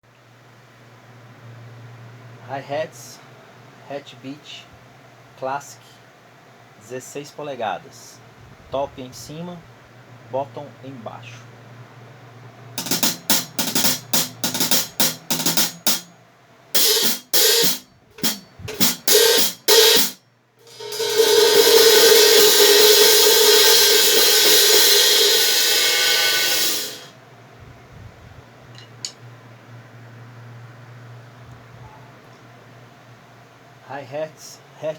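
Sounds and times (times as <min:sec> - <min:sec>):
hi-hat cymbals being played: 0:12.8 - 0:16.2, 0:16.8 - 0:27.1.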